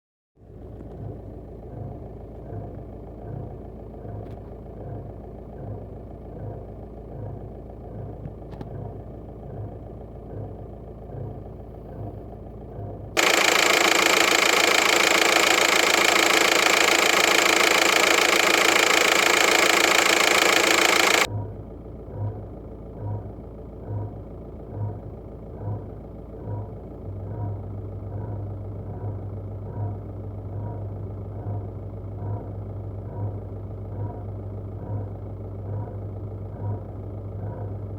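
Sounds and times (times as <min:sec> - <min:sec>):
diesel engine idling: 0:09.3 - 0:27.0.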